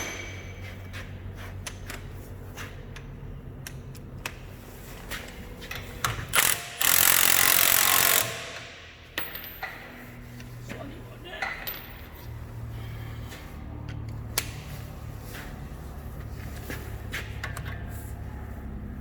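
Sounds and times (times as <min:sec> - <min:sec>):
power tool running: 0:06.3 - 0:08.9.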